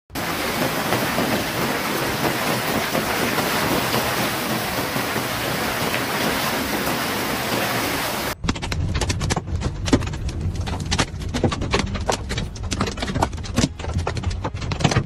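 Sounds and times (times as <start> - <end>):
heavy rain pouring: 0.1 - 8.4
low rumble: 8.4 - 14.5.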